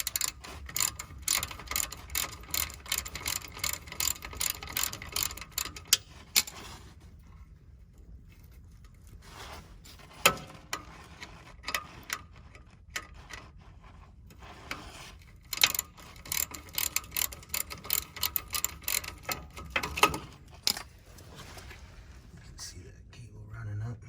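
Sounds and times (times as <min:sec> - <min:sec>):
ratchet clicking: 0:00.0 - 0:06.7, 0:14.4 - 0:20.9.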